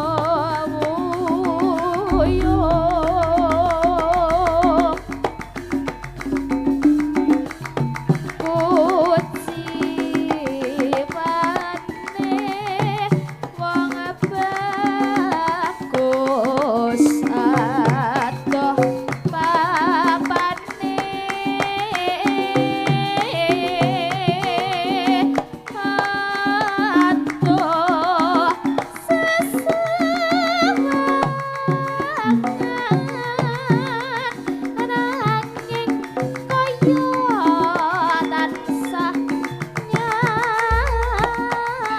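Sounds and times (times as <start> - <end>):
gamelan ensemble playing: 0.0 - 12.5, 40.7 - 41.8
hand drums: 0.0 - 41.9.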